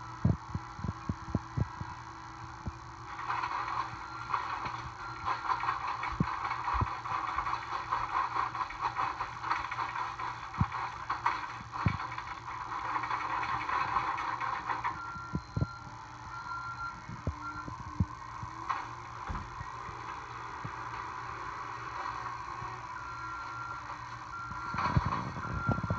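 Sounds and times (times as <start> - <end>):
diesel engine running: 0.0 - 25.9
rattling clatter: 3.2 - 15.0.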